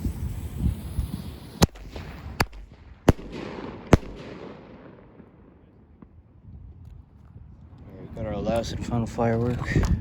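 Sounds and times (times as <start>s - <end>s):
fireworks sharp bangs: 0.0s - 6.2s.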